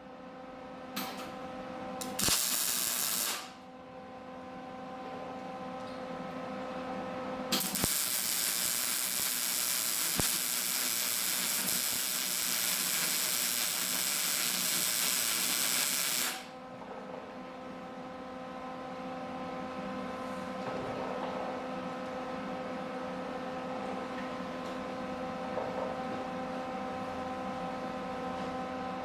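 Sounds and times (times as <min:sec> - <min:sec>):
welding pops: 0:02.0 - 0:03.5, 0:07.6 - 0:16.5
arc welding crackling hiss: 0:02.0 - 0:03.6, 0:07.6 - 0:16.5.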